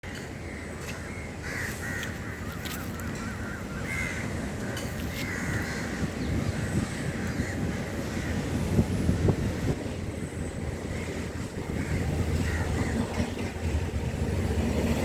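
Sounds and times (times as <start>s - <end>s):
crows cawing: 0.1s - 8.5s, 10.9s - 13.2s.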